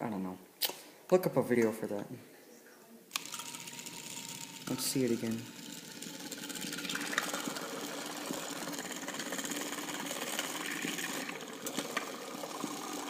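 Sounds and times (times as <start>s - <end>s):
electric motor whirring: 3.1s - 13.0s.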